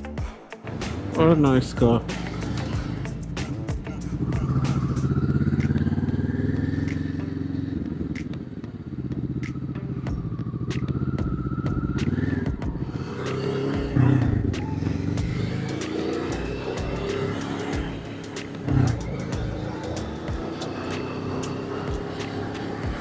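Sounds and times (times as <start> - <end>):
motorcycle engine accelerating: 0.0 - 23.0.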